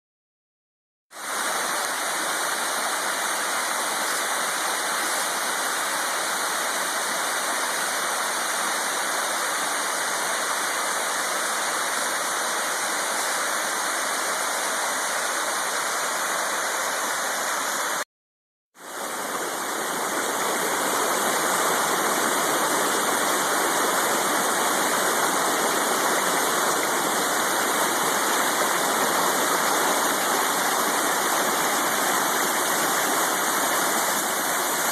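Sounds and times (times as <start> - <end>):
waterfall rushing: 1.2 - 18.0, 18.8 - 34.9.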